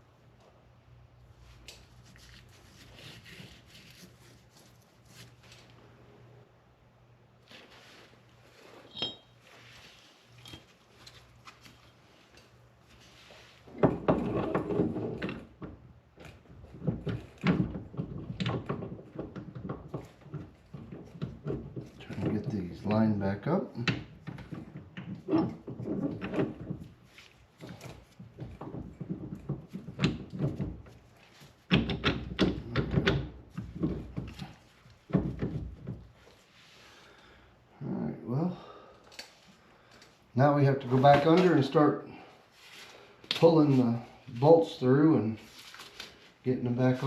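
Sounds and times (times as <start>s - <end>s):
metal tools clinking and knocking: 8.9s - 9.4s.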